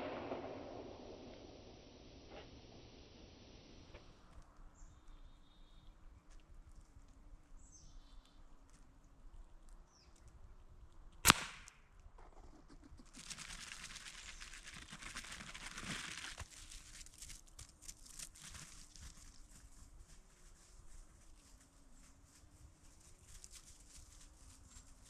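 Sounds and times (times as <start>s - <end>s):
air rifle shot: 0.0s - 3.8s, 11.2s - 11.8s
rustling and scrabbling: 12.2s - 25.0s.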